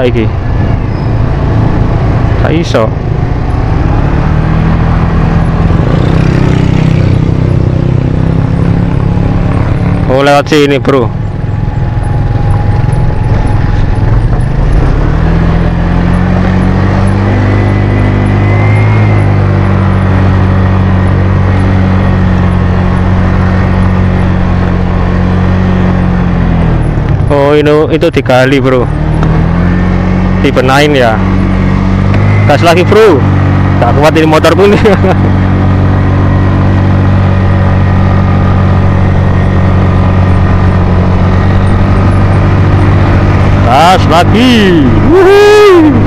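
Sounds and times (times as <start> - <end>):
road noise: 0.0 - 46.0
scooter engine running: 0.4 - 27.8, 28.4 - 46.0
wind noise: 11.2 - 25.0.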